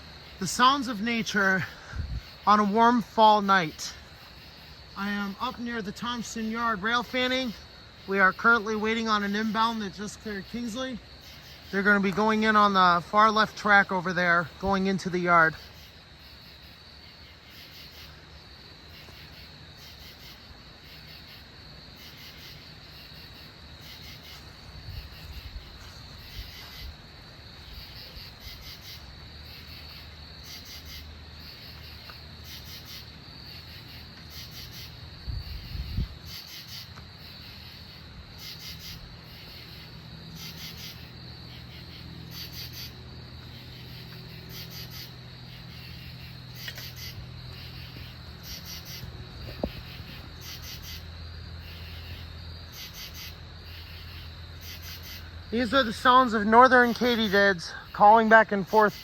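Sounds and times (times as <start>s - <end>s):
high insect trill: 0.0s - 59.0s
katydids raspy pulsed calls: 38.4s - 51.0s, 51.7s - 59.0s.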